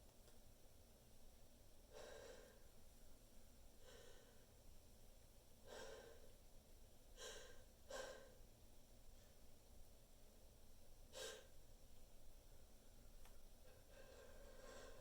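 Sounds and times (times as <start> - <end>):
person breathing faintly: 13.6 - 15.0.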